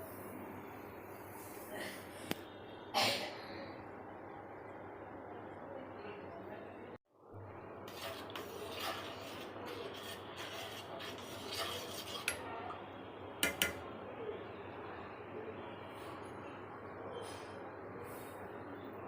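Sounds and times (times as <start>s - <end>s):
kitchen utensil scraping: 7.9s - 12.5s.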